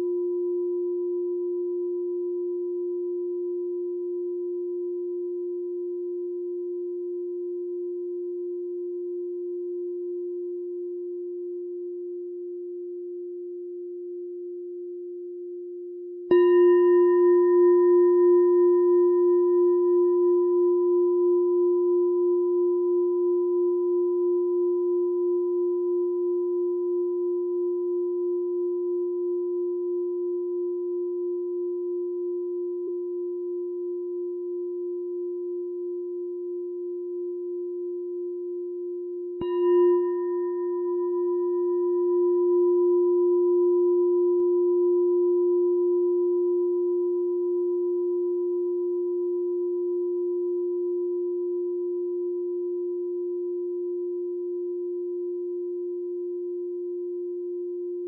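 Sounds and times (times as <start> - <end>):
meditation bell ringing: 16.3 - 31.7, 39.2 - 56.7.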